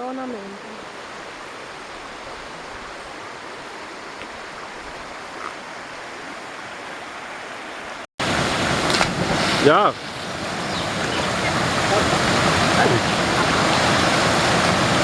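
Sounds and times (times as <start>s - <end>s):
water rushing down a cascade: 6.2s - 15.0s.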